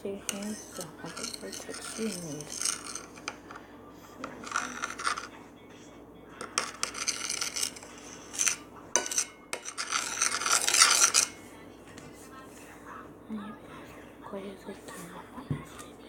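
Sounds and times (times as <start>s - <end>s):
slime scraping in a bowl: 0.3s - 3.5s, 4.4s - 5.3s, 6.4s - 11.4s
utensil clinking against bowl: 6.4s - 11.3s.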